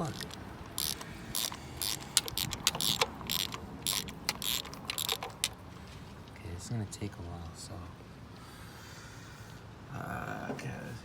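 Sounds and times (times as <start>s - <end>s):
socket ratchet clicking: 0.0s - 5.6s.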